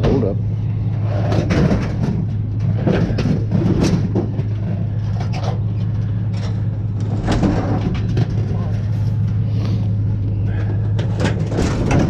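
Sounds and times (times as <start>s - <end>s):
engine running low drone: 0.0s - 12.0s
short knocks and clanks: 10.6s - 12.0s.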